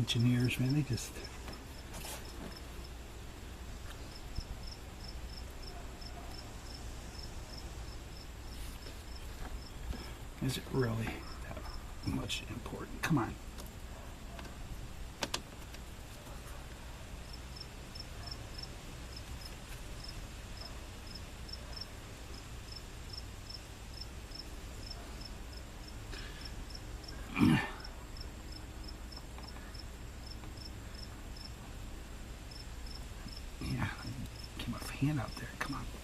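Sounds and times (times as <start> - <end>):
cricket chirping: 4.0 - 10.1, 17.2 - 31.6, 32.4 - 36.0.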